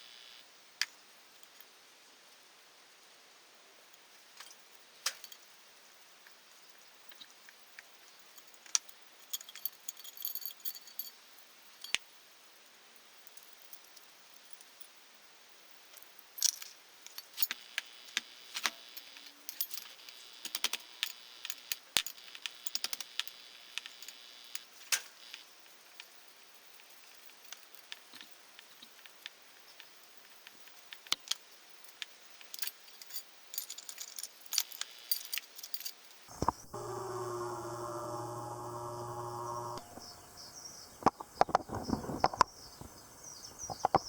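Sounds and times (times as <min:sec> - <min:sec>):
metal parts clinking and rattling: 0:04.4 - 0:05.4, 0:08.4 - 0:11.2, 0:15.9 - 0:26.2, 0:26.8 - 0:36.2.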